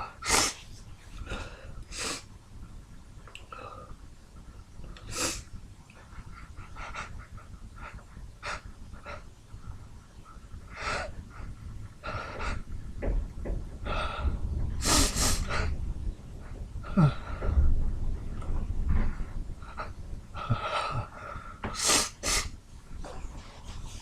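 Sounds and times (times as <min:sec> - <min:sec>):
man sniffing and gasping: 0:14.8 - 0:15.7, 0:20.4 - 0:22.6.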